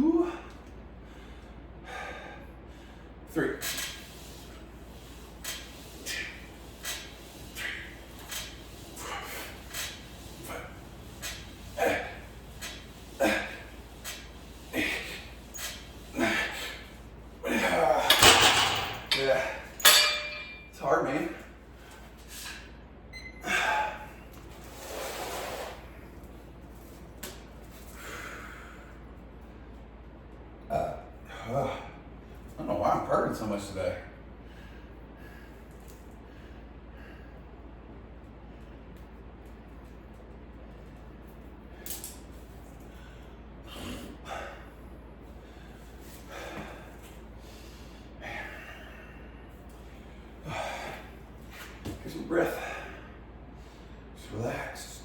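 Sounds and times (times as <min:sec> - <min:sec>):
man breathing hard: 0:00.2 - 0:03.2, 0:27.9 - 0:29.0, 0:34.4 - 0:37.6, 0:42.9 - 0:51.3, 0:52.5 - 0:54.1.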